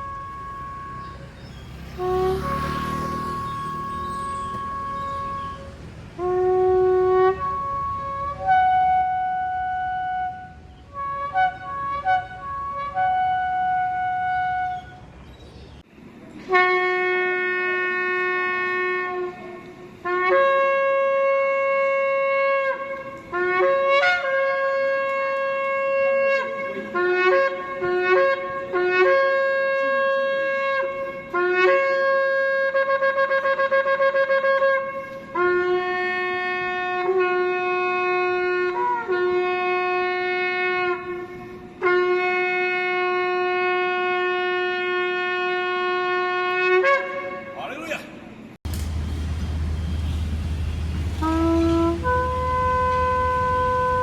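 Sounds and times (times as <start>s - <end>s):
shofar blasts: 0.0s - 15.1s, 16.5s - 47.6s, 48.8s - 54.0s.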